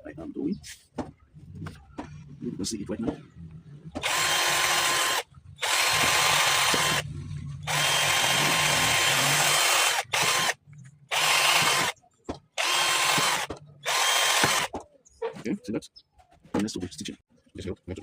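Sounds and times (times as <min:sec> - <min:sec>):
electric drill drilling plastic: 0:04.0 - 0:07.0, 0:07.7 - 0:12.0, 0:12.6 - 0:14.7.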